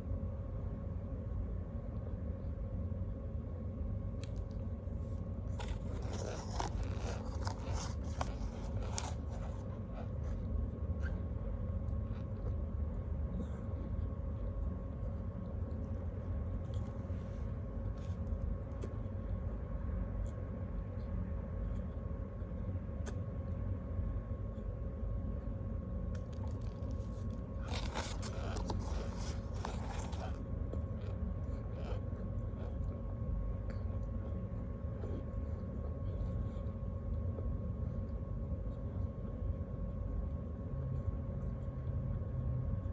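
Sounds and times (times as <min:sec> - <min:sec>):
steady low hum: 0:00.0 - 0:42.9
snack wrapper crinkling: 0:04.2 - 0:10.1, 0:26.2 - 0:30.4
snack crunching: 0:04.2 - 0:11.2, 0:16.6 - 0:19.1, 0:26.1 - 0:32.9.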